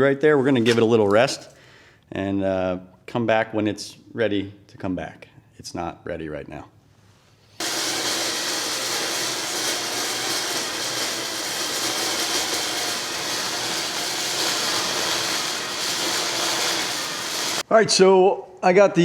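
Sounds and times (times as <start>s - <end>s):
motor-driven rushing noise: 7.6s - 17.6s.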